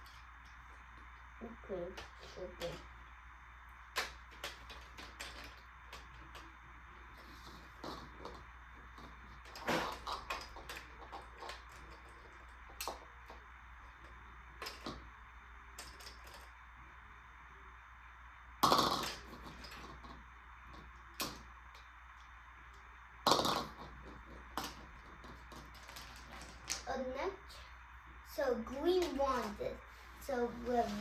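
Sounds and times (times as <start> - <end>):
marbles clacking in toy marble run: 1.8 - 2.9, 3.9 - 6.6, 9.0 - 13.4, 14.0 - 15.1, 15.7 - 16.6, 18.6 - 21.5, 23.2 - 27.0, 28.6 - 29.7.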